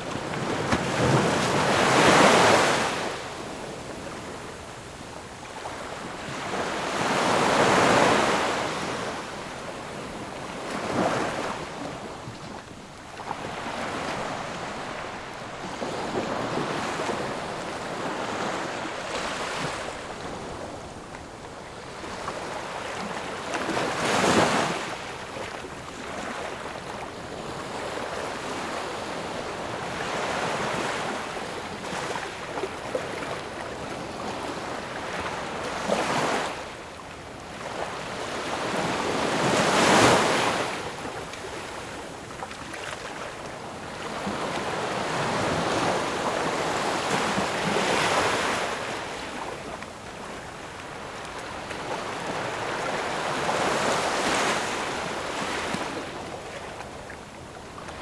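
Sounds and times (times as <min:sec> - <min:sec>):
ocean waves breaking: 0:00.0 - 0:03.7.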